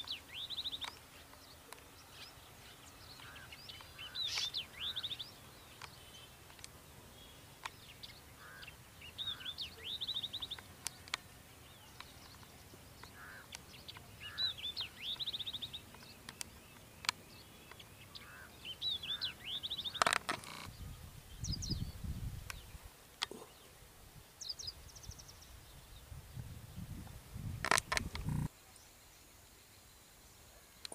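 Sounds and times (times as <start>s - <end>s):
songbird singing with trill: 0.0s - 23.8s, 24.4s - 26.9s
soft low bird calls: 0.0s - 26.6s, 27.6s - 28.9s
sharp clicks: 27.6s - 28.5s.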